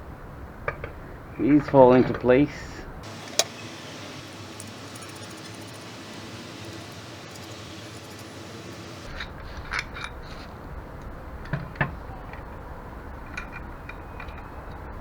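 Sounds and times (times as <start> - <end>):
steady hiss: 1.4 - 11.4
metal bolts clinking and knocking: 3.0 - 10.4, 13.2 - 14.5.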